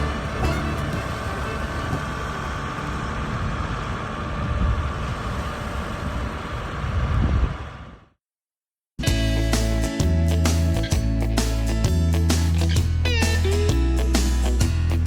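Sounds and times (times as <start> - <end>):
tractor diesel engine running: 0.0 - 8.2.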